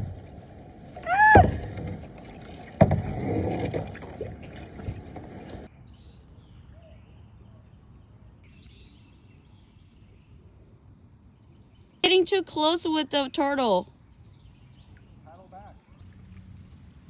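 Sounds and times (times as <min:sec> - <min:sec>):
paddle splashes: 0:00.0 - 0:05.7, 0:15.8 - 0:17.0
knocks against kayak hull: 0:01.3 - 0:05.6.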